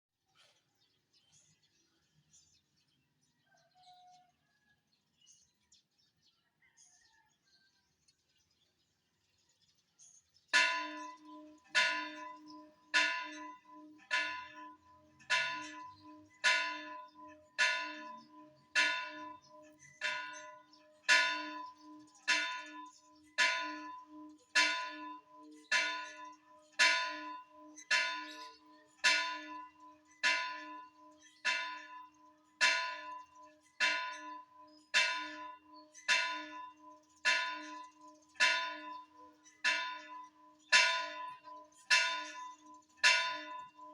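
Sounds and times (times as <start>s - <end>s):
church bell tolling: 10.6s - 43.9s.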